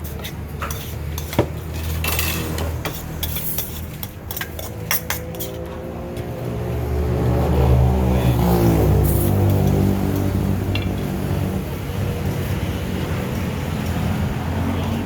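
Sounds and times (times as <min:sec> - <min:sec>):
utensils clinking against dishes: 0:00.0 - 0:06.2, 0:09.0 - 0:11.2.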